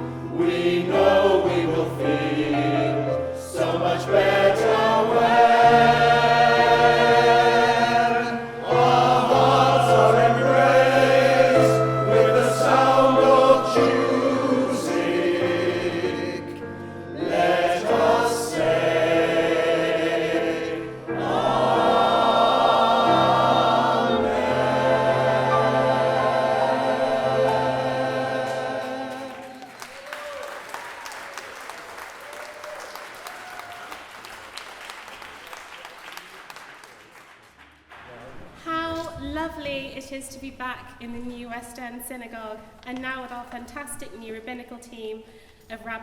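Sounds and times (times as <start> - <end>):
low instrumental accompaniment: 0.0 - 29.5
choir singing: 0.0 - 29.8.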